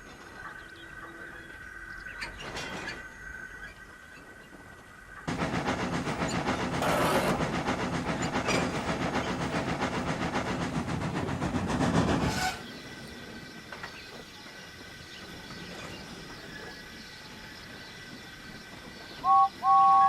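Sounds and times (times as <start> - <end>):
steam hissing: 5.3 - 20.0
steam locomotive chuffing: 5.3 - 20.0.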